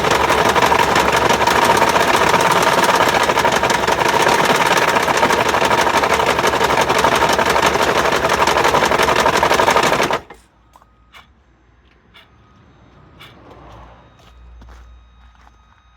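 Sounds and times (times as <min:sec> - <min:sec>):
diesel engine knocking clatter: 0:00.0 - 0:10.4.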